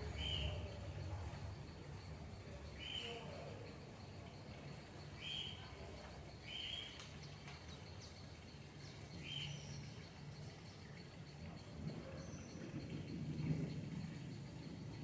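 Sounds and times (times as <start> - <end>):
high-pitched insect trill: 0.0 - 7.0.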